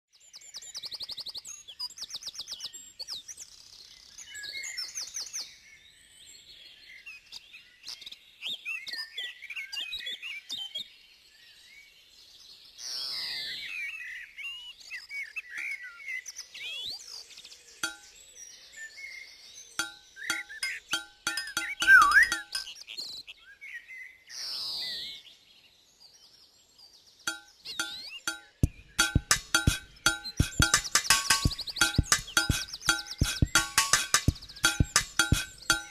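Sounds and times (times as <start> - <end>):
birds chirping and singing: 19.8 - 22.7.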